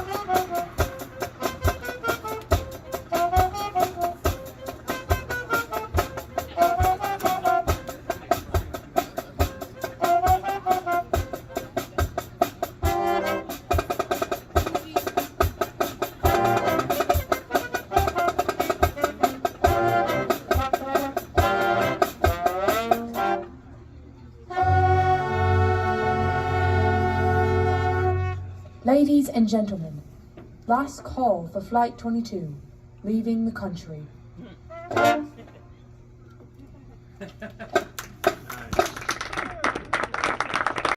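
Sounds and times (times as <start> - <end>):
marching drum strokes: 0.0 - 23.6, 34.6 - 35.6
marching band brass chords: 0.0 - 23.7, 24.4 - 29.2, 34.2 - 35.6.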